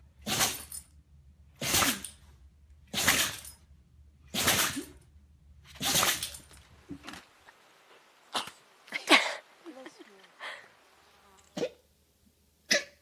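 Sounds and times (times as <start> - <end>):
animal sneezing: 0.2 - 0.7, 1.6 - 2.2, 2.9 - 3.4, 4.3 - 5.0, 5.7 - 6.4, 11.5 - 11.8, 12.7 - 13.0.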